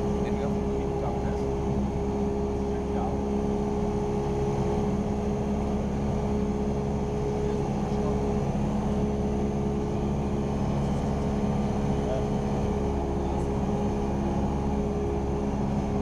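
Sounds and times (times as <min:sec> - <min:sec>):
airplane engine and propeller droning: 0:00.0 - 0:16.0.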